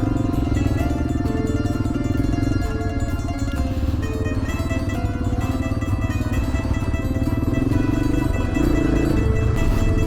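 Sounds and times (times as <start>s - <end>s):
background music with pulsing beat: 0.0s - 10.0s.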